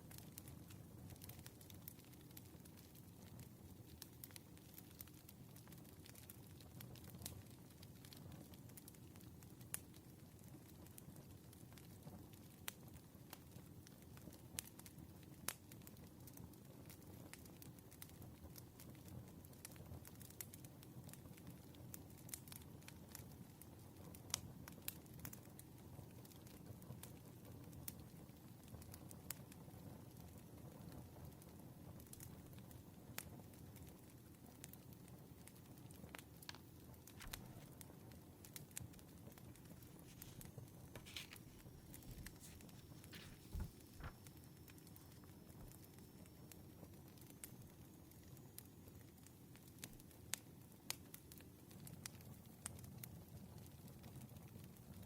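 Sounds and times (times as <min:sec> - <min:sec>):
soft steady hiss: 0:00.0 - 0:55.0
wood fire crackling: 0:00.0 - 0:55.0
pops and snaps of burning logs: 0:27.8 - 0:47.9, 0:48.6 - 0:55.0.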